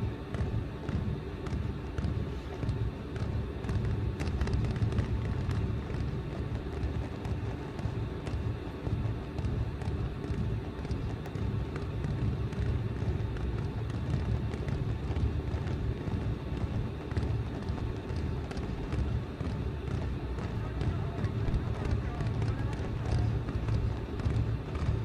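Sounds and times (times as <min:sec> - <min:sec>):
faint fireworks crackles: 0:00.2 - 0:25.0.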